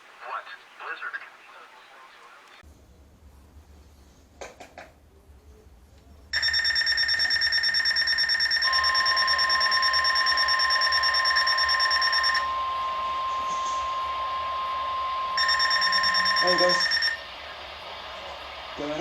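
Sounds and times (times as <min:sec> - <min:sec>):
pulsing electronic alarm: 0:06.4 - 0:19.0
steady alarm tone: 0:06.4 - 0:19.0.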